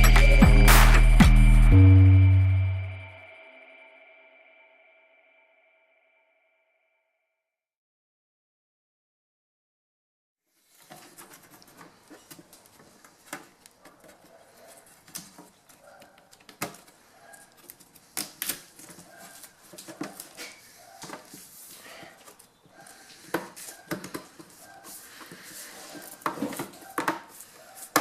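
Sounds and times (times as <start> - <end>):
plastic parts clicking and knocking: 23.2 - 24.6.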